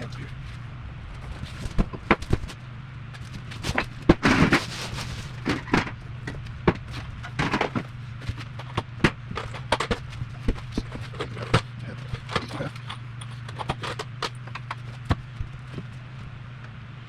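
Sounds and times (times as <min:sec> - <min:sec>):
low steady hum: 0:00.0 - 0:17.0
knocks and clicks of handling: 0:05.4 - 0:15.9.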